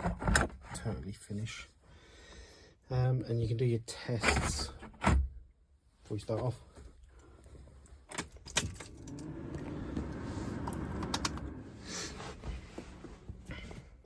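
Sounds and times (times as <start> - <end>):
low hum: 8.7 - 13.7.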